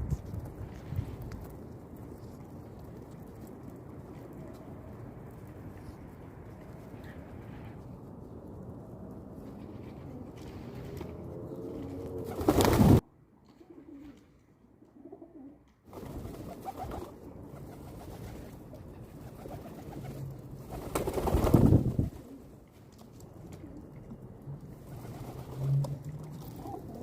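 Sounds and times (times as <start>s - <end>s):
pigeons cooing: 14.9s - 15.6s, 26.4s - 27.0s.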